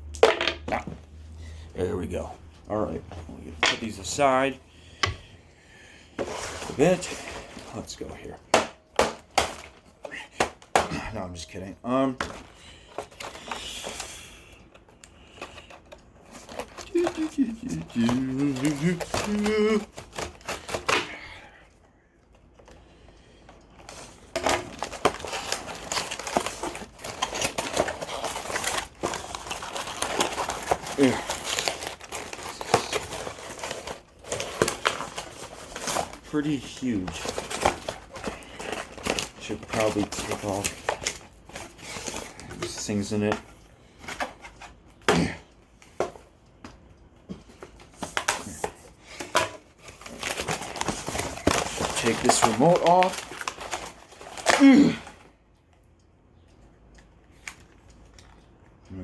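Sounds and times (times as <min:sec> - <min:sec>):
packaging crinkling and rustling: 0:06.2 - 0:45.1, 0:45.7 - 0:55.8, 0:56.4 - 0:59.0.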